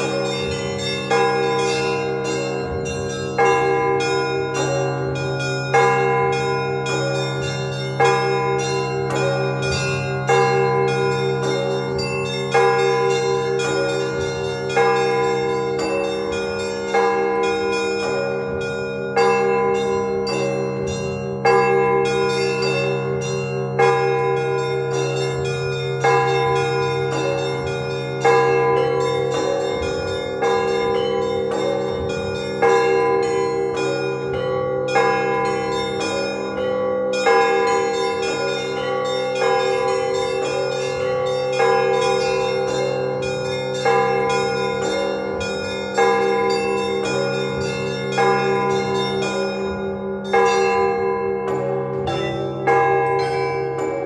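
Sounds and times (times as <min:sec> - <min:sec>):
heavy church bell: 0:00.0 - 0:54.0
smaller bells ringing: 0:00.0 - 0:54.0.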